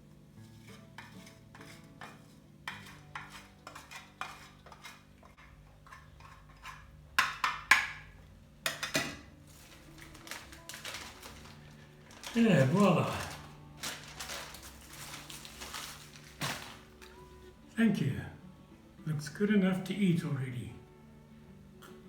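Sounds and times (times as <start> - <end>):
faint guitar music: 0.0 - 7.1, 8.0 - 22.0
cheese grating: 0.4 - 7.0, 9.5 - 17.2.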